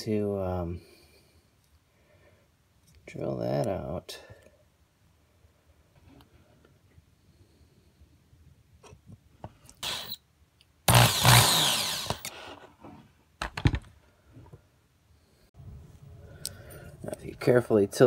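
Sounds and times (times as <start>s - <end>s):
power drill running: 9.8s - 10.2s, 10.9s - 12.4s.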